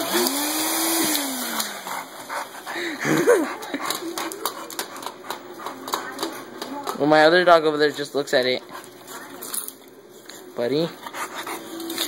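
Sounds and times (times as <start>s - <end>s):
vacuum cleaner hiss: 0.0s - 2.4s.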